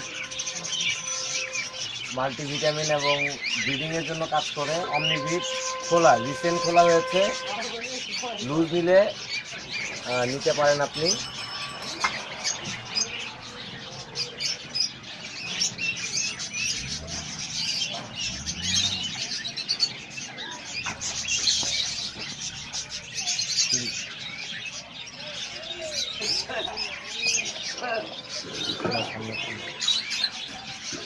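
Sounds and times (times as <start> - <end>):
small birds chirping: 0.0 - 31.0.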